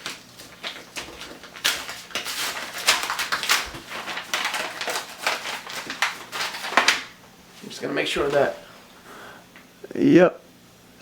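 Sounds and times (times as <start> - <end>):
packaging rustling and crinkling: 0.0 - 8.6.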